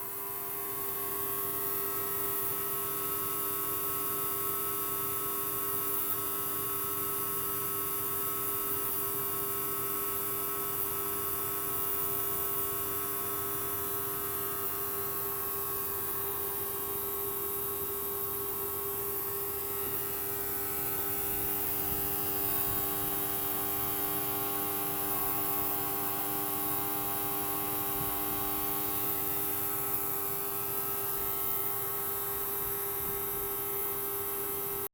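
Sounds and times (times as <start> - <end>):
electrical hum: 16.0 - 34.9.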